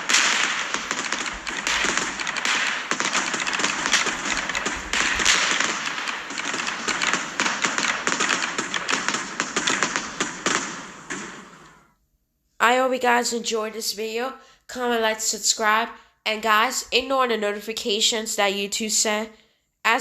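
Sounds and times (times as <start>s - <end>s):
fireworks crackling and popping: 0.0s - 11.9s.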